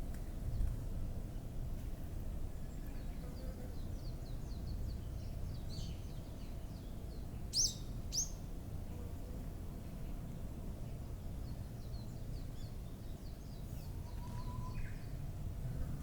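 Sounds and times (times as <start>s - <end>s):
faint quick bird chirps: 13.6s - 15.1s
upward-sweeping bird calls: 13.9s - 15.0s.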